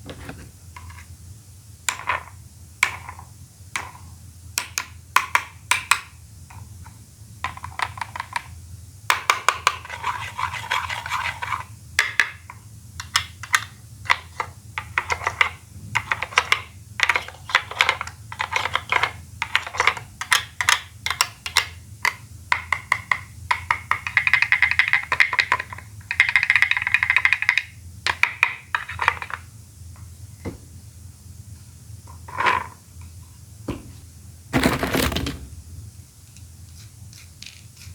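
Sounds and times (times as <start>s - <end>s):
plastic clattering: 0.0s - 0.6s, 33.7s - 35.8s.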